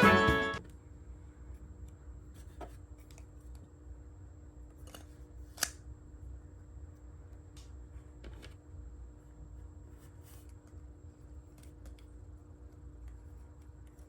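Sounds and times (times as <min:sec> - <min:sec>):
background music: 0:00.0 - 0:00.6
low steady hum: 0:00.0 - 0:14.0.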